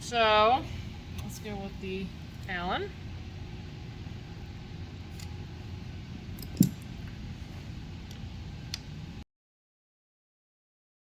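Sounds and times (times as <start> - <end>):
steady low hum: 0.0 - 9.2
allen key clicks: 6.4 - 6.9.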